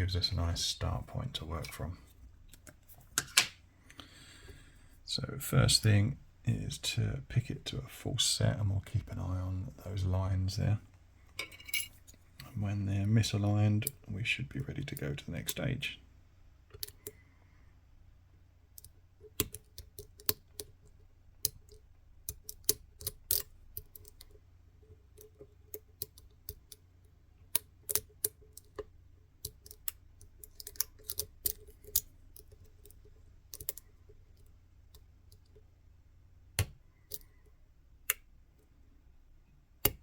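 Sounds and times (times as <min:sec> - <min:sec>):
lock pick clicking on pins: 0:21.4 - 0:24.3, 0:27.5 - 0:33.9.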